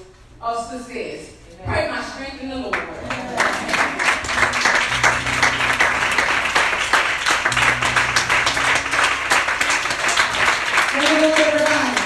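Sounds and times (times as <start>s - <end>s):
crowd applauding: 2.7s - 12.0s
low held tones: 3.0s - 12.0s.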